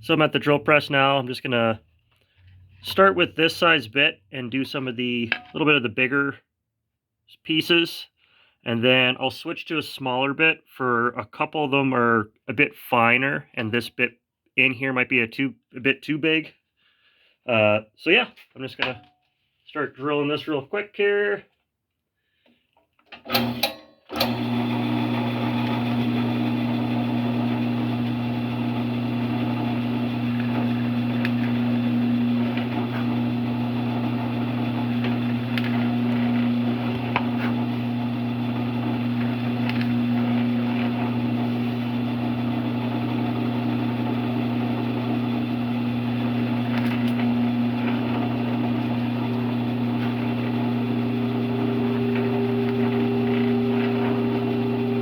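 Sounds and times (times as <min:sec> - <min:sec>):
drill press motor humming: 0:23.4 - 0:55.0.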